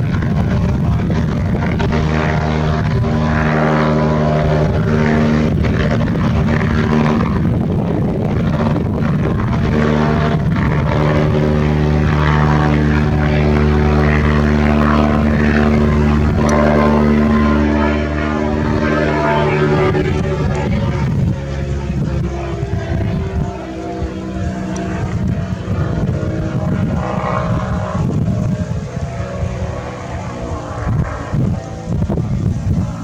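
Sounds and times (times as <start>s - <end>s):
ultralight engine and propeller: 0.0s - 33.0s.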